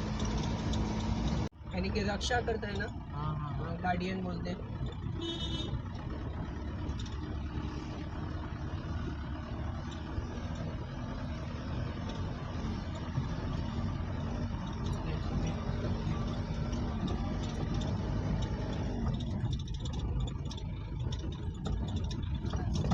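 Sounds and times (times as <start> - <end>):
car engine running: 0.0 - 22.9
low road rumble: 0.0 - 22.9.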